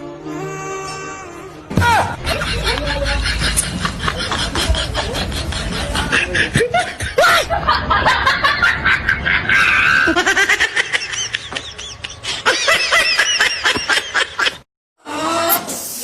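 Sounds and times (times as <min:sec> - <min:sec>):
people laughing and giggling: 0:02.0 - 0:14.6.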